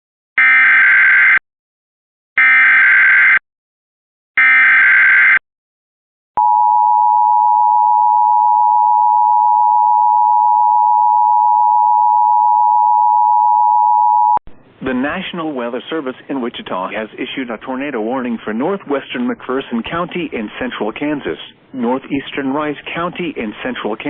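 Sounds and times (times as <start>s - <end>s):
long high alert tone: 6.4s - 14.4s.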